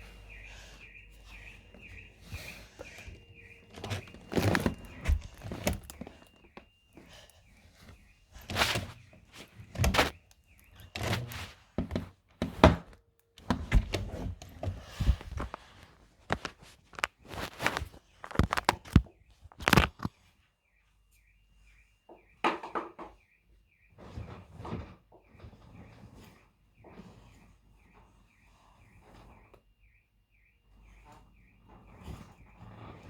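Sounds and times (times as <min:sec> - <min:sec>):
faint steady high tone: 0:00.0 - 0:11.0
thumps and knocks: 0:02.8 - 0:06.7, 0:10.9 - 0:20.1.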